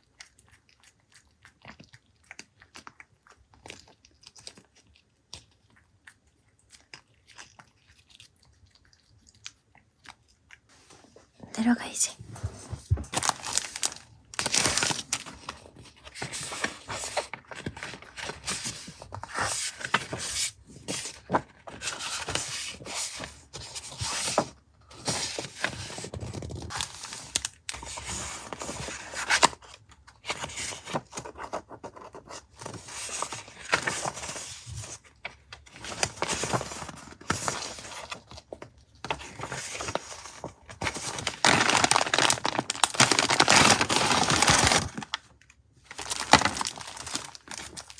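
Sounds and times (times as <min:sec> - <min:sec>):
paper rustling: 0:12.2 - 0:47.9.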